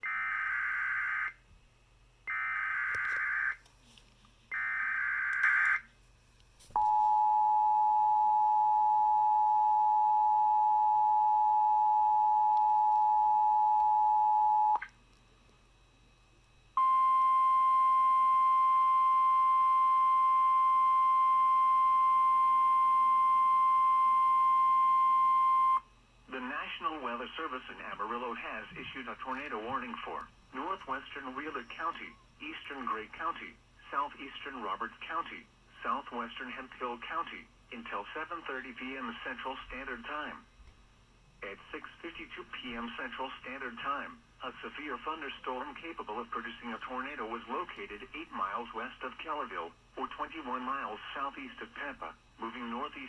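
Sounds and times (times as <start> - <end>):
steady warning tone: 6.8 - 14.9, 15.8 - 33.1.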